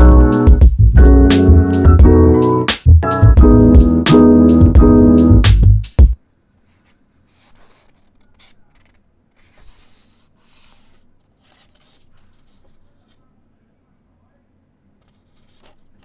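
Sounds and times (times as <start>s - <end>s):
piano music: 0.0s - 6.2s
scratching strokes on paper: 6.6s - 13.3s, 15.0s - 16.0s.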